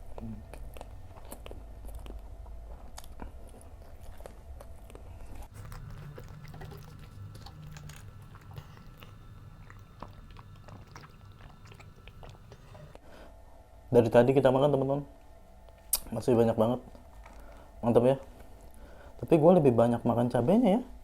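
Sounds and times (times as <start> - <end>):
person chewing crunchy food: 0.0 - 13.0, 16.8 - 19.2
small crunches: 0.1 - 12.6
wet mouth clicks: 4.2 - 13.0, 15.8 - 16.1.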